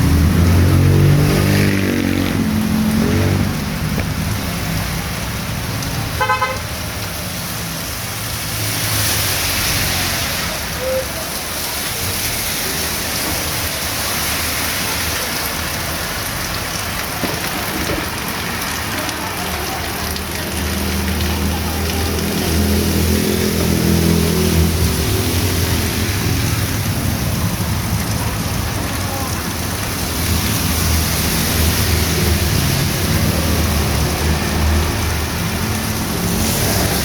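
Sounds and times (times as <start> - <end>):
heavy rain on a street: 0.0 - 37.0
traffic engine rumble: 0.0 - 37.0
tyre hiss on wet road: 3.0 - 37.0
vehicle horn toot: 6.2 - 6.6.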